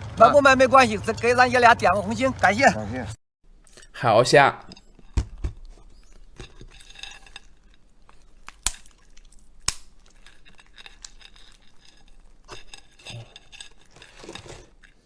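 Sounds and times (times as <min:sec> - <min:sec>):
shrimp shell crackling: 0:03.4 - 0:15.0.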